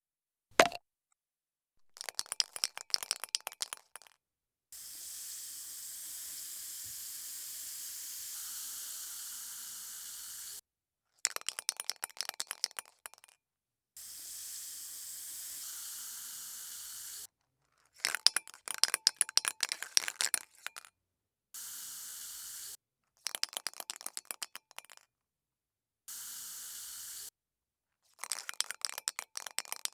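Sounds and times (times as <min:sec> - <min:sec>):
mixing ball rattling in spray can: 0:00.6 - 0:00.8, 0:01.9 - 0:04.2, 0:11.3 - 0:13.4, 0:18.0 - 0:20.9, 0:23.3 - 0:25.0, 0:28.2 - 0:29.9
spray can click: 0:00.6 - 0:00.8
spray paint hiss: 0:04.9 - 0:10.6, 0:15.2 - 0:17.3, 0:21.6 - 0:22.8, 0:26.2 - 0:27.3.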